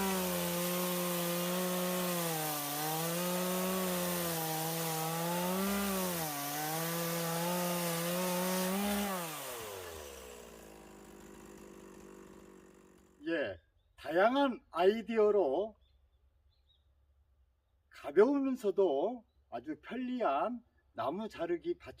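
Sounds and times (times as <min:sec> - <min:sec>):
chainsaw cutting a log: 0:00.0 - 0:13.2.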